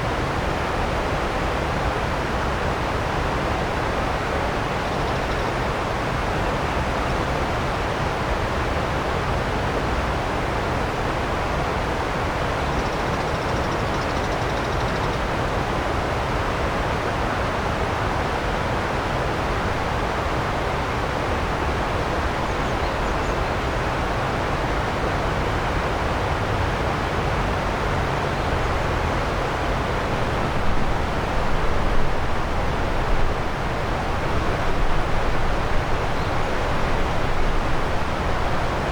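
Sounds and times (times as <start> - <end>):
river rushing: 15.3 - 38.9.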